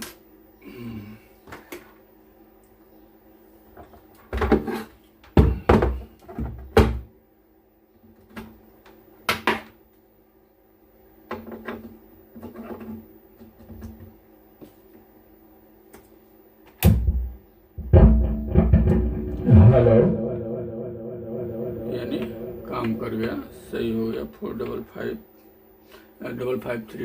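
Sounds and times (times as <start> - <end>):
steady low hum: 17.5 - 26.5.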